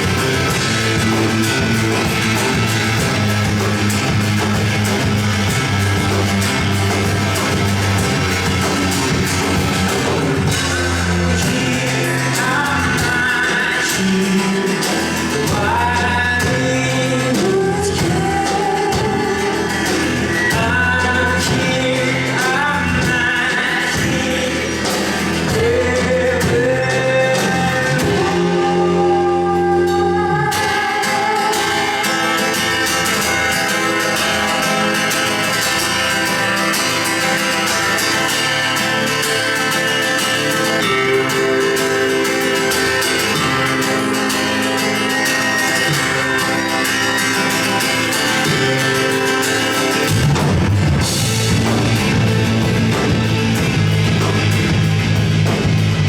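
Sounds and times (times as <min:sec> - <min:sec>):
rock band playing live: 0:00.0 - 0:56.0
person singing: 0:09.4 - 0:34.6, 0:40.3 - 0:50.4.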